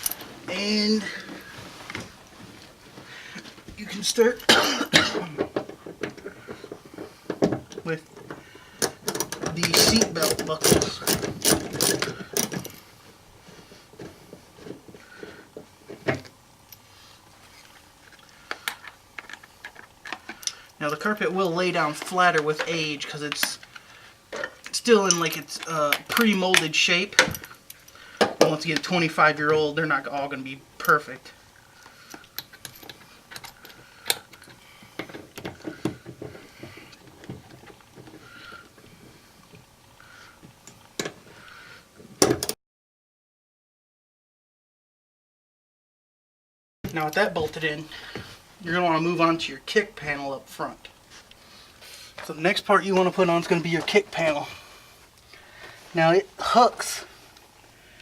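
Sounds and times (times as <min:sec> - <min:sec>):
quiet handling noises: 0:00.0 - 0:42.6, 0:49.7 - 0:57.8
hand tools clicking and knocking: 0:03.3 - 0:12.8, 0:31.9 - 0:39.7
seatbelt buckle clicks and clatter: 0:08.2 - 0:12.8.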